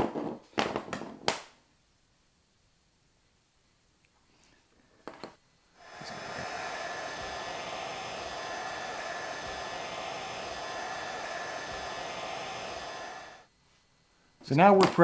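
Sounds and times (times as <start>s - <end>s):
heat gun blowing with a hum: 5.8s - 13.5s.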